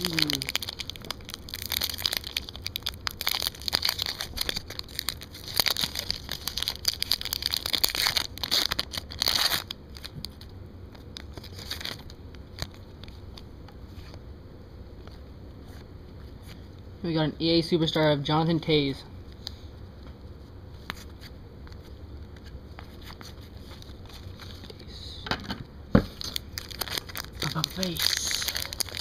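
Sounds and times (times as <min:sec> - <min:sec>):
foil wrapper tearing and crinkling: 0:00.0 - 0:10.4, 0:11.1 - 0:13.1, 0:26.1 - 0:29.0.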